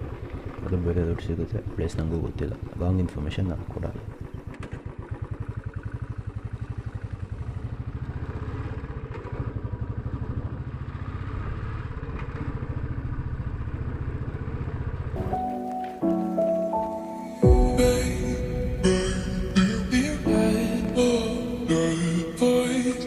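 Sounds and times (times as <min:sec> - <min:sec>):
motorcycle engine running: 0:00.0 - 0:15.2.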